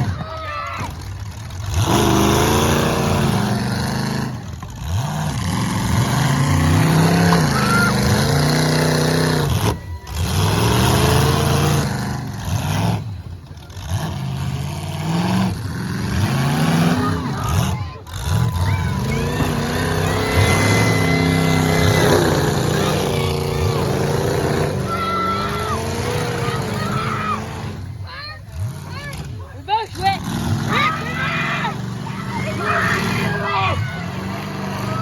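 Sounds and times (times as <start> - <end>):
car engines revving: 0.0 - 35.0.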